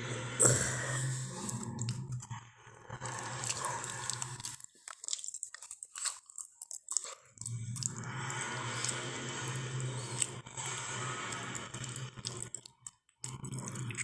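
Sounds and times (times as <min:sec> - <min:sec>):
crunching and chewing: 0:02.9 - 0:10.5, 0:11.1 - 0:14.0.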